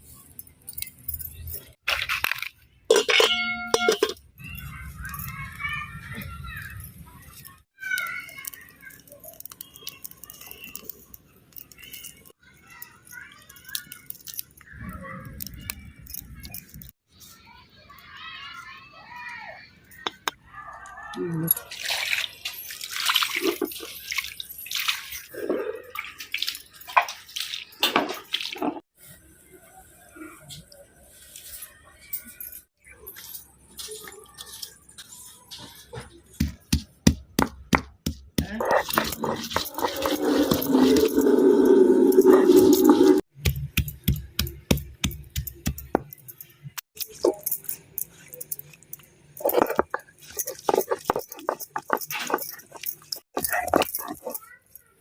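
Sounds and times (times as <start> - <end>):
water splashing and sloshing: 21.4 - 28.9
person eating and chewing: 48.1 - 54.4.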